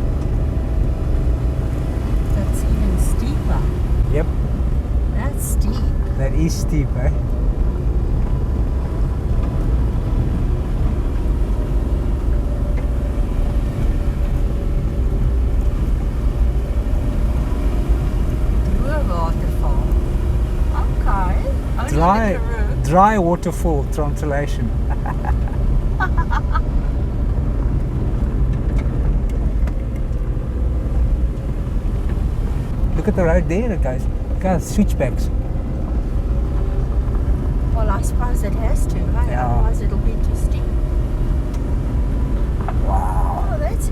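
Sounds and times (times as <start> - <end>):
car engine labouring uphill: 0.0 - 43.9
tyres rumbling on gravel: 0.0 - 43.9.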